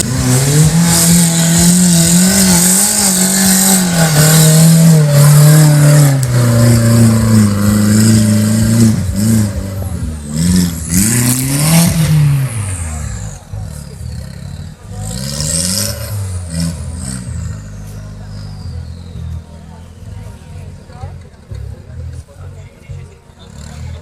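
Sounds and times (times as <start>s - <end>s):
off-road vehicle engine revving: 0.0s - 24.0s.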